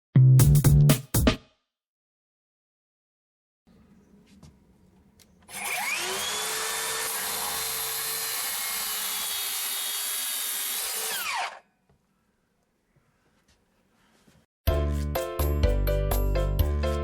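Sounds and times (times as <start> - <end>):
circular saw cutting wood: 5.4 - 11.6.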